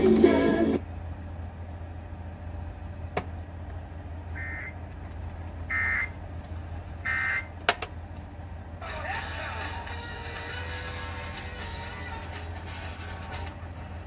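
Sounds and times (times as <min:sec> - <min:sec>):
low electrical hum: 0:00.0 - 0:14.0
short electronic beeps: 0:04.4 - 0:04.8.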